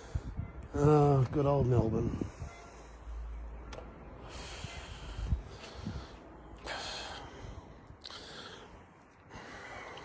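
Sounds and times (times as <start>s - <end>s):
man breathing: 0.0s - 0.4s, 4.2s - 10.0s.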